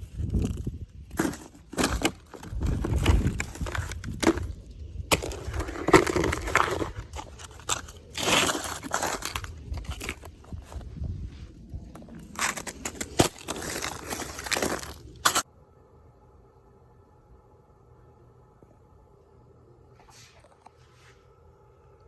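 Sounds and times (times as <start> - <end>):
snow and ice crunching: 0.0 - 15.4.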